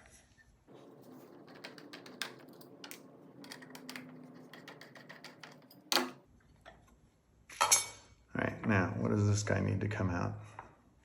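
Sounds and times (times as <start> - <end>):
wall clock clicks and taps: 1.4 - 6.2.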